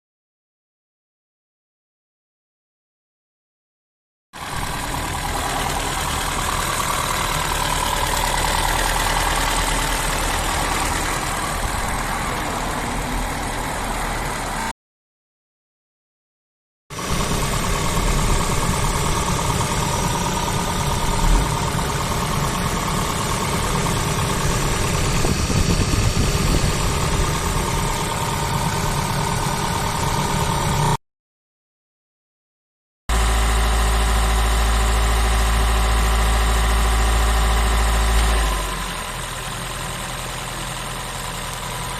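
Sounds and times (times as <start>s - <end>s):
car petrol engine running: 4.4s - 14.6s, 17.0s - 31.0s.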